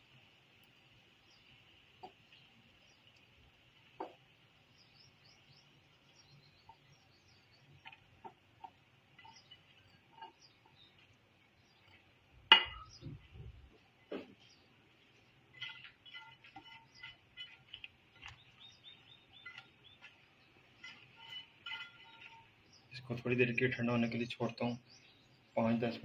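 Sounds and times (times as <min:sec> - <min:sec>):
utensil clinking against a pan: 0:06.6 - 0:11.1, 0:11.7 - 0:13.2, 0:15.4 - 0:23.1.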